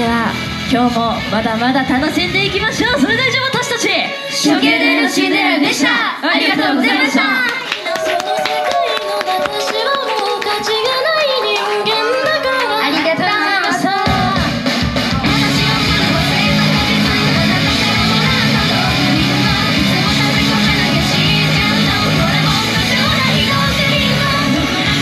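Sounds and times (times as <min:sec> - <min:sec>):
rock music with distorted guitar: 0:00.0 - 0:03.7, 0:14.0 - 0:25.0.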